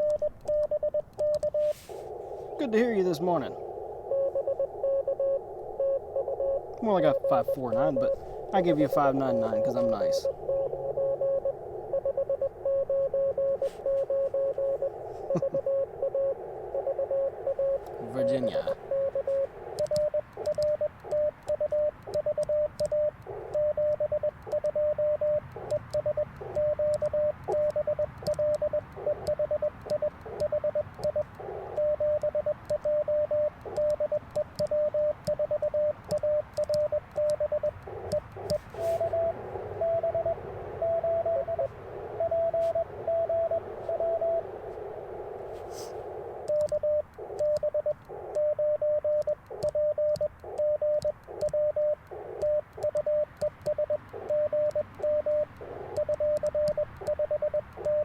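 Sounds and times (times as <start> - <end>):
morse code sidetone: 0.0 - 58.0
receiver hiss: 0.0 - 58.0
higher keyed morse tone: 2.5 - 19.9.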